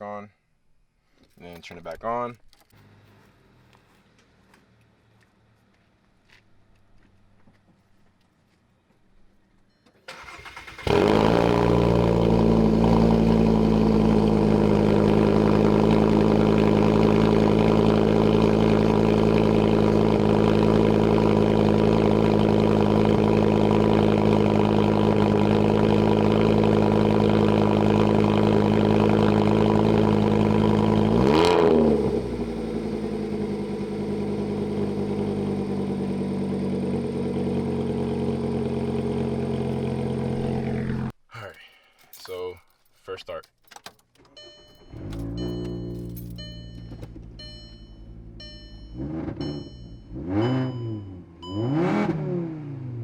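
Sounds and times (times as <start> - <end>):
car engine idling: 10.1 - 41.1, 44.1 - 52.0.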